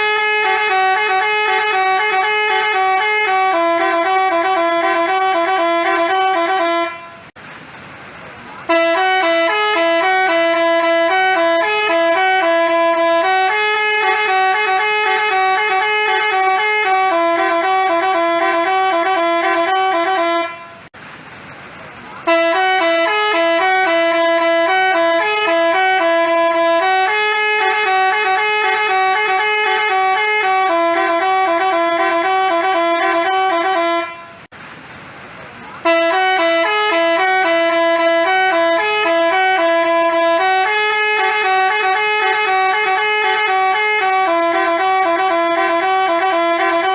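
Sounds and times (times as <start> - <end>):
bus horn playing a tune: 0.0 - 7.4, 8.6 - 21.0, 22.2 - 34.5, 35.8 - 46.9.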